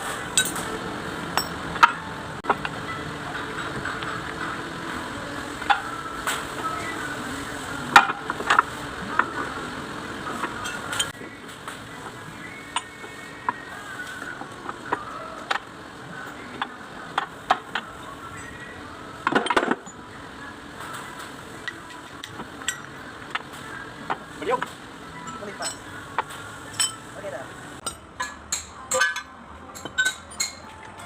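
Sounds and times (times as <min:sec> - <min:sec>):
metal tools clinking: 0:00.3 - 0:00.7, 0:01.3 - 0:02.0, 0:25.2 - 0:25.9, 0:26.7 - 0:27.2.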